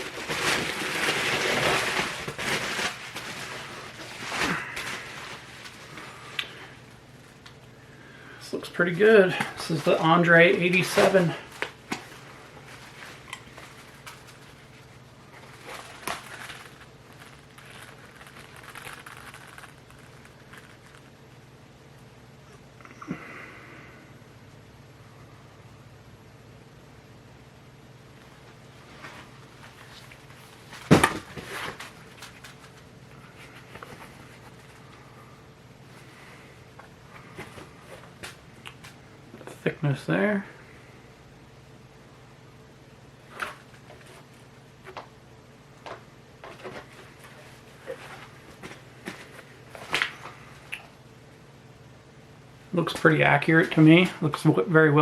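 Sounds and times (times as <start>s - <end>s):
low electrical hum: 0.0s - 55.0s
soft rustling: 28.2s - 39.0s.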